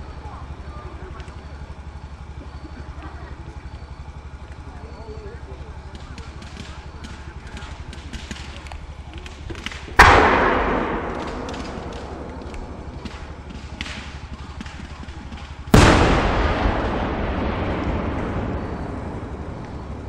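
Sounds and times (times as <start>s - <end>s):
faint scattered pops: 5.8s - 20.0s
firework shells booming: 5.8s - 20.0s.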